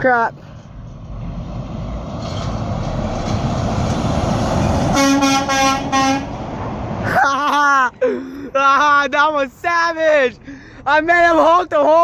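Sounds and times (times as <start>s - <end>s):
truck engine and road noise: 0.0s - 12.0s
truck horn blasts: 4.8s - 6.5s.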